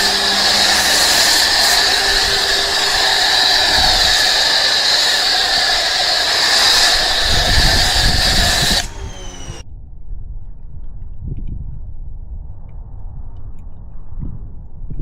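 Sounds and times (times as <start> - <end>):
machine running with hiss and whine: 0.0 - 9.6.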